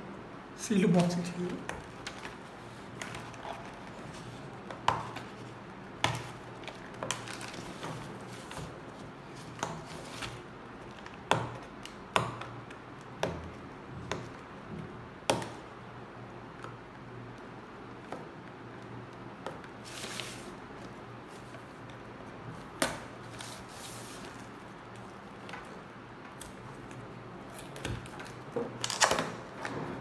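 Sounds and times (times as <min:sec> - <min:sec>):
packaging rustling: 0:06.6 - 0:08.6.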